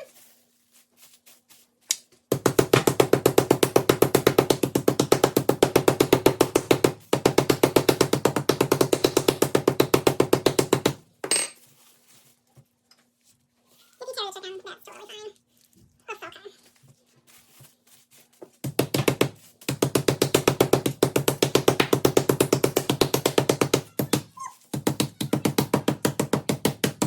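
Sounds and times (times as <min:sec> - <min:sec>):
meat being pounded thumps: 0:02.3 - 0:11.1, 0:18.5 - 0:27.0.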